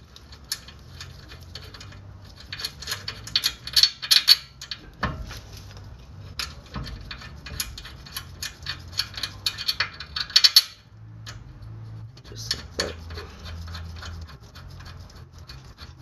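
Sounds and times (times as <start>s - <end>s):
metal clinks and clicks: 0.1s - 5.1s.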